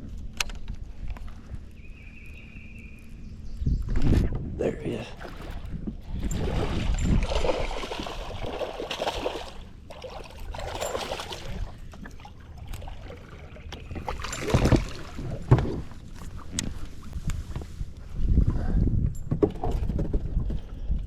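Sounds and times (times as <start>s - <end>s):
water splashing: 5.1s - 16.3s.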